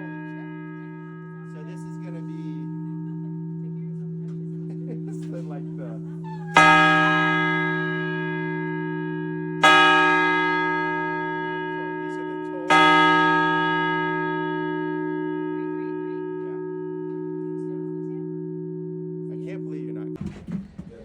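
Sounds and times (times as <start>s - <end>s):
low hum tone: 0.0s - 9.7s
church bell tolling: 0.0s - 20.2s.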